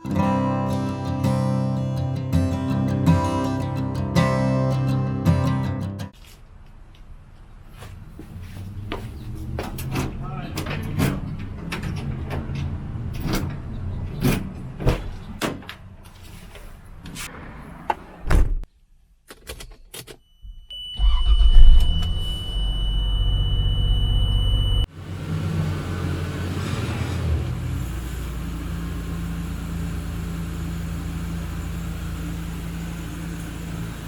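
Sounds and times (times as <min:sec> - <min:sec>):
vehicle engine high whine: 0:07.8 - 0:15.4, 0:20.7 - 0:34.0
low rumble: 0:21.0 - 0:24.9.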